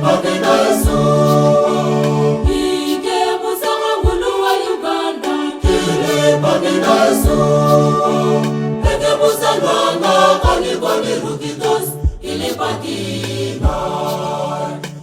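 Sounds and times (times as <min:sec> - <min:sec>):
low drum beat: 0:00.0 - 0:02.9, 0:05.6 - 0:07.8, 0:08.8 - 0:09.3, 0:10.4 - 0:10.8, 0:13.2 - 0:14.0
sustained low instrumental notes: 0:00.0 - 0:03.1, 0:05.6 - 0:14.7
church choir singing: 0:00.0 - 0:15.0.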